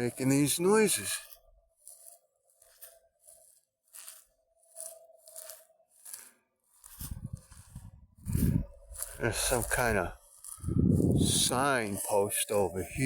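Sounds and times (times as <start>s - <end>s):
footsteps crunching on gritty ground: 0.0s - 13.0s
low rumble: 7.1s - 11.6s.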